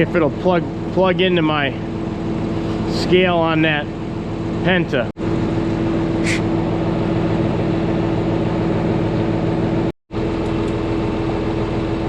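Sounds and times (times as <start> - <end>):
short high squeak: 6.2 - 6.5.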